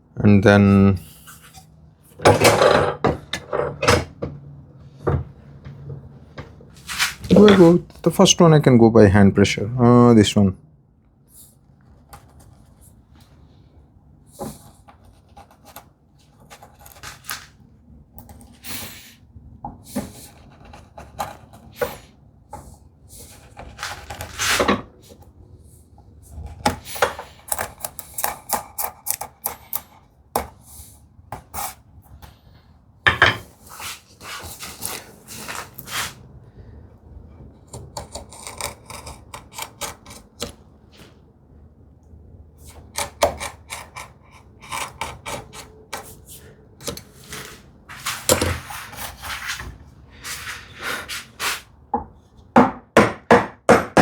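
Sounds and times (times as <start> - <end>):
chisel cutting and scraping wood: 14.5 - 17.6, 19.9 - 24.9, 26.3 - 30.6, 33.7 - 36.2, 37.4 - 40.7, 42.6 - 51.6.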